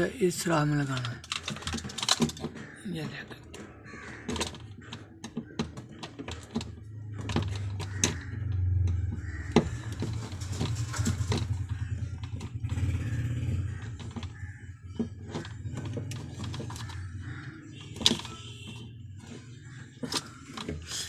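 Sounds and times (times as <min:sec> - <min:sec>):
low motor hum: 0:06.6 - 0:20.5.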